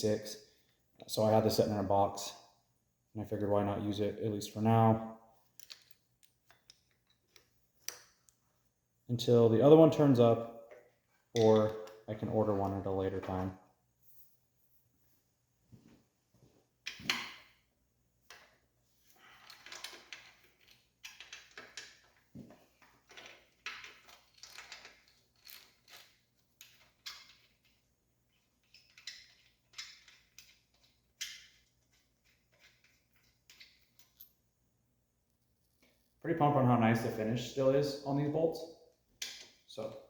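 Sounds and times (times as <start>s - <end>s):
tools clicking and knocking on metal: 10.7s - 12.8s, 19.4s - 27.8s, 28.6s - 34.4s, 39.2s - 39.7s
bolts scraping: 11.3s - 13.5s.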